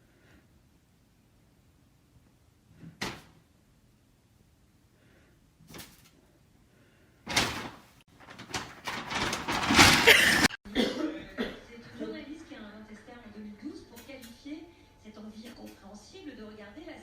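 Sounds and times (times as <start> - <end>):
knocking and rustling noise: 7.3 - 10.6.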